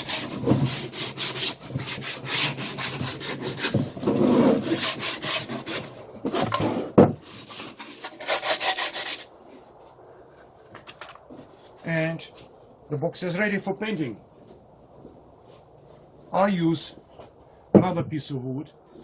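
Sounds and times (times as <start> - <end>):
sandpaper rubbing on wood: 0.0 - 6.0, 7.2 - 9.3.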